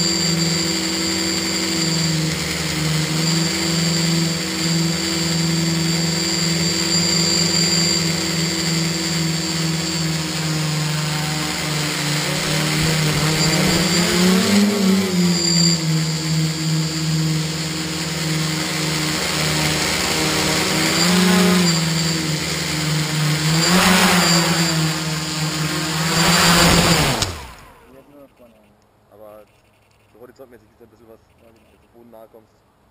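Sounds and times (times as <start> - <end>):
drone propellers whirring: 0.0 - 28.0.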